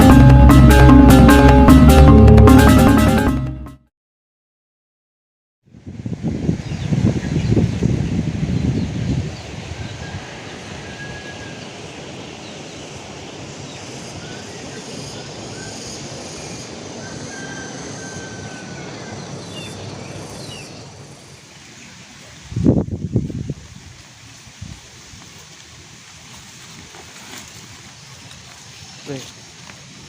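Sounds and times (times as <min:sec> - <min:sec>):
river water rushing: 0:09.4 - 0:22.5.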